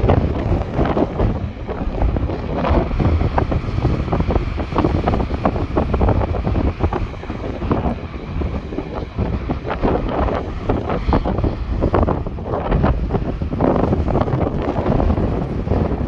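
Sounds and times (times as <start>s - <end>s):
sea waves breaking on beach: 0.0s - 16.0s
wind buffeting microphone: 0.0s - 16.0s.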